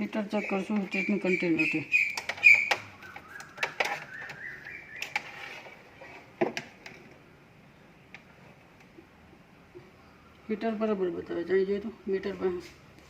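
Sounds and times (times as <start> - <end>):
continuity tester beeping: 0.2 - 5.2.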